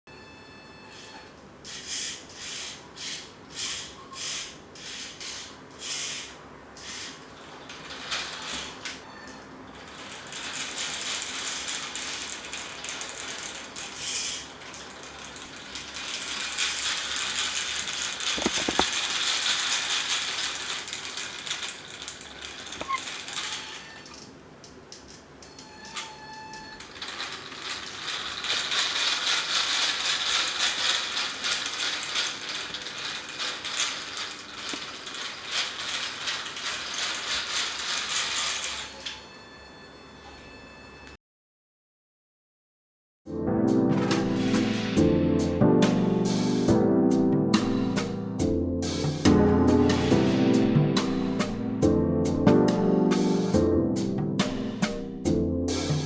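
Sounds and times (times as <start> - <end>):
mechanical clicking and ratcheting: 9.8 - 24.3.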